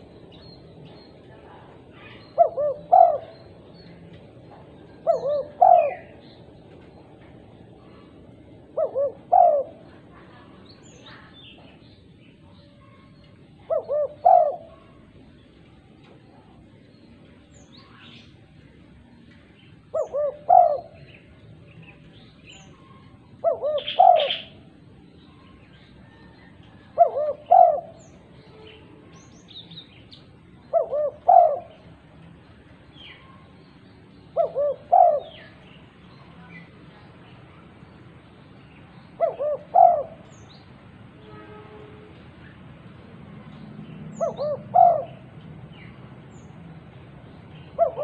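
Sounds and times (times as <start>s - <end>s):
small birds chirping: 0.0s - 41.1s, 42.1s - 48.0s
dove cooing: 1.7s - 3.6s, 4.8s - 6.2s, 7.8s - 10.6s, 13.6s - 15.1s, 19.9s - 21.1s, 22.9s - 24.8s, 26.0s - 28.1s, 30.7s - 31.9s, 34.3s - 35.7s, 39.2s - 40.4s, 44.1s - 45.3s, 47.7s - 48.0s.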